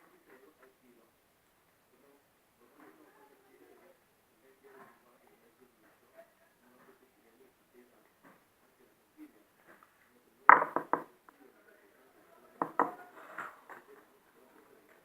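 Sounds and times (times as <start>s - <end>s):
hard objects knocking on container: 10.5s - 11.1s, 12.6s - 13.0s.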